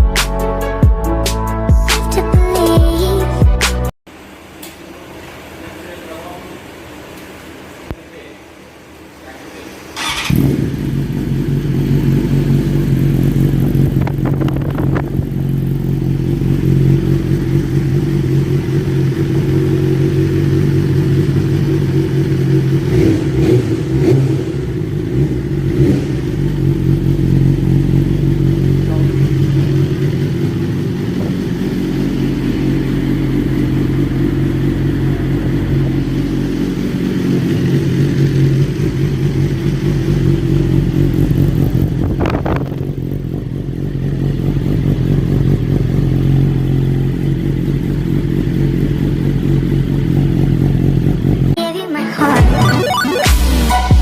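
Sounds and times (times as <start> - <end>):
motorcycle engine starting and idling: 8.9 - 51.6
throttle blips: 52.3 - 54.0.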